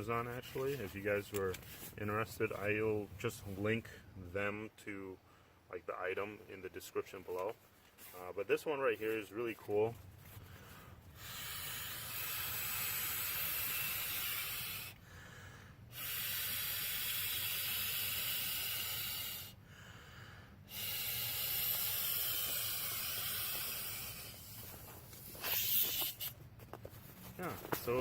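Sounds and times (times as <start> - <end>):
breath blowing into pillow valve: 10.5 - 26.4.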